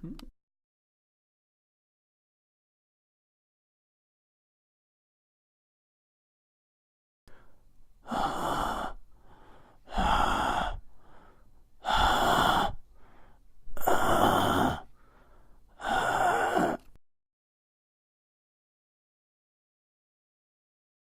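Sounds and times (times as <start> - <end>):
person breathing hard: 7.3 - 17.0.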